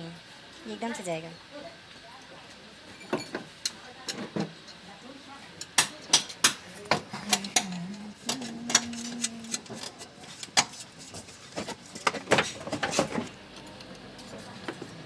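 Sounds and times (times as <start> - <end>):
short low hum: 7.2 - 9.8
tools and metal parts clinking: 7.3 - 10.7.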